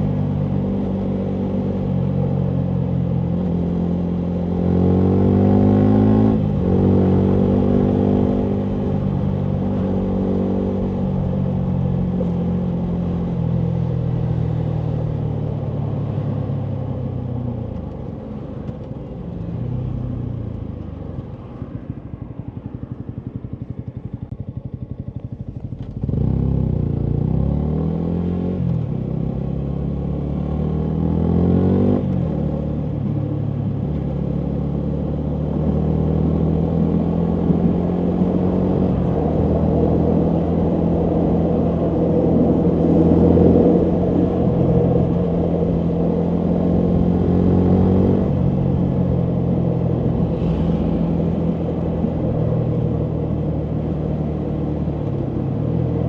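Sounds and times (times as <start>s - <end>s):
motorcycle engine revving: 0.0s - 17.2s, 21.6s - 56.0s.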